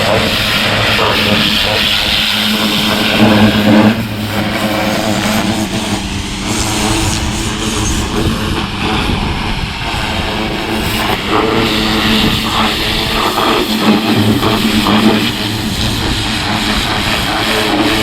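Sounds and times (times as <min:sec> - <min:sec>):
pressure washer motor humming: 0:00.0 - 0:18.0
water jet spraying: 0:00.0 - 0:18.0.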